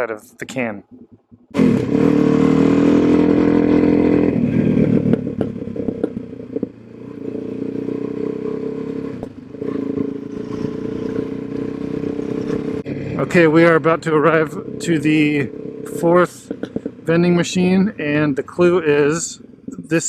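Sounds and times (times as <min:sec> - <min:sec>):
motorcycle engine running: 0:00.6 - 0:20.0
clattering knocks: 0:00.8 - 0:01.6.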